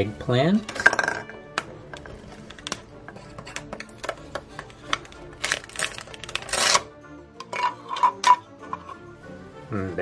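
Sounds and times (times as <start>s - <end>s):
soft background music: 0.0s - 10.0s
velcro ripping: 5.4s - 6.9s.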